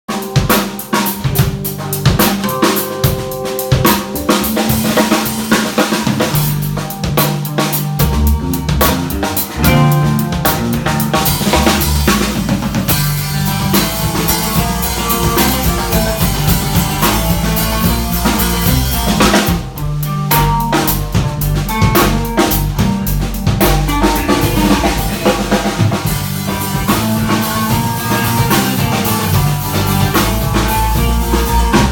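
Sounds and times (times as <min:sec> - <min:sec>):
band playing instrumental: 0:00.1 - 0:31.9
bass drum snare and rimshots: 0:00.1 - 0:31.9
bass line: 0:00.1 - 0:31.9.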